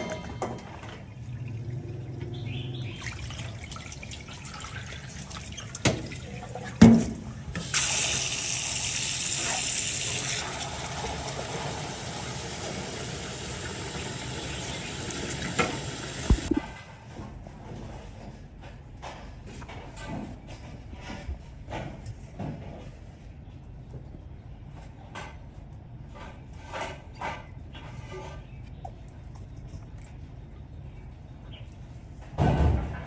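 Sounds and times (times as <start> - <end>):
tap water running into sink: 7.6 - 16.6.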